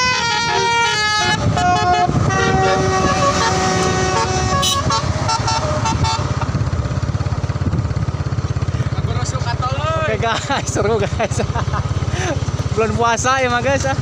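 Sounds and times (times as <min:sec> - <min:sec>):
musical bus horn: 0:00.0 - 0:06.5
bus engine running: 0:00.0 - 0:14.0.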